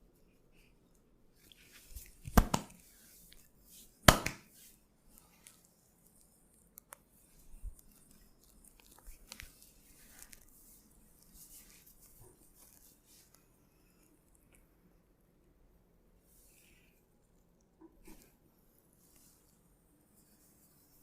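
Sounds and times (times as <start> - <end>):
hands snapping: 2.2 - 2.8, 4.1 - 4.5
hands rubbing on skin: 7.2 - 13.4, 20.2 - 21.0.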